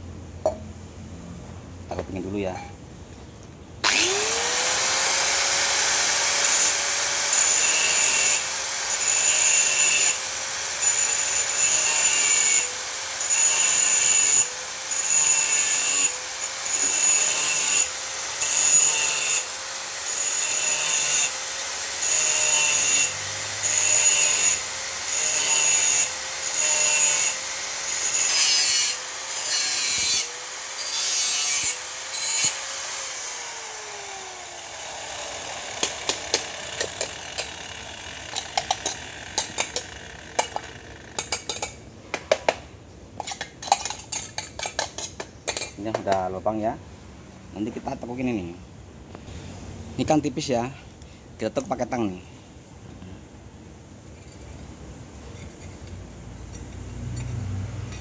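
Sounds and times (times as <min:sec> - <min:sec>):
power tool motor whine: 0:03.8 - 0:25.4, 0:31.7 - 0:41.2
tool scraping sheet metal: 0:35.6 - 0:41.8, 0:43.2 - 0:46.2.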